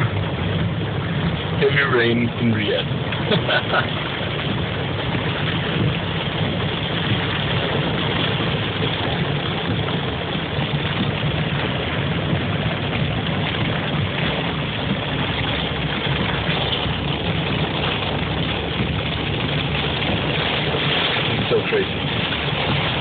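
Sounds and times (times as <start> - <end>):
heavy rain pouring: 0.0 - 23.0.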